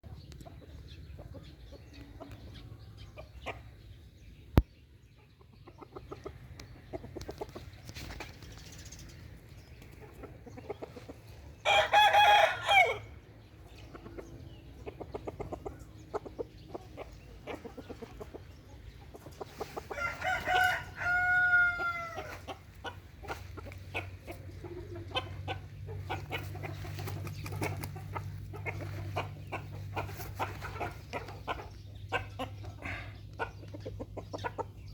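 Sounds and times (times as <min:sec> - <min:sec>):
chicken clucking: 0:00.0 - 0:34.9
rooster crowing: 0:11.6 - 0:13.1, 0:19.9 - 0:22.4.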